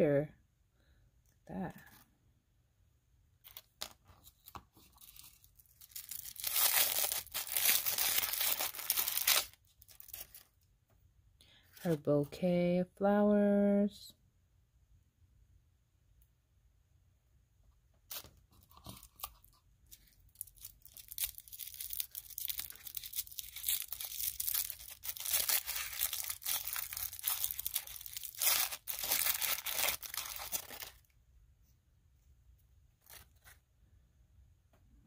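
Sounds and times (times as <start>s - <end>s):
plastic wrapping tearing and crinkling: 4.9s - 10.5s, 19.0s - 31.1s.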